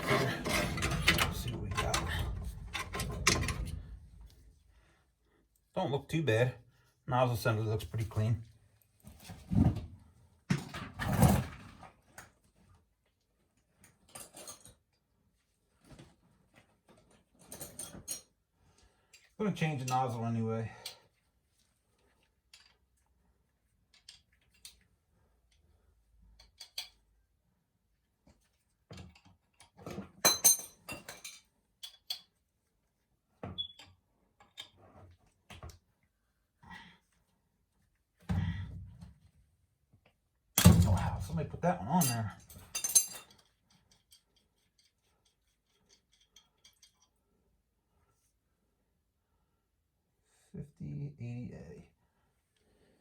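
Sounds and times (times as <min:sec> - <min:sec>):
metal tools clinking: 0:00.0 - 0:04.4, 0:41.9 - 0:47.2
metal parts scraping and rattling: 0:00.0 - 0:04.5, 0:42.0 - 0:47.2.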